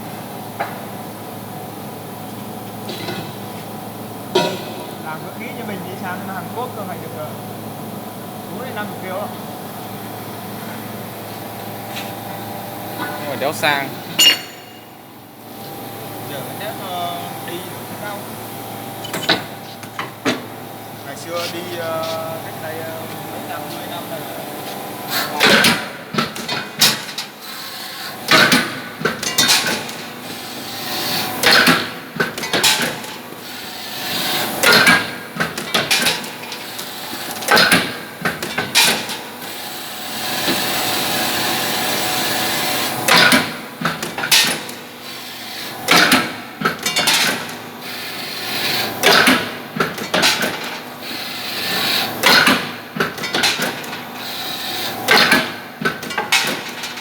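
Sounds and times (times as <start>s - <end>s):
punch press hitting sheet metal: 14.2s - 14.9s.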